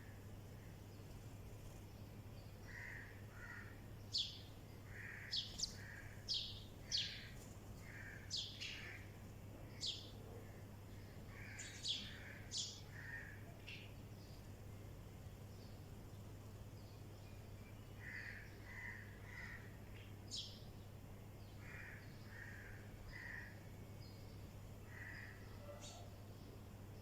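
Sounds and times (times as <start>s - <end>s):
soft low bird calls: 0.0s - 14.5s, 21.5s - 26.6s
faint low hum: 0.0s - 27.0s
small birds chirping: 0.0s - 27.0s.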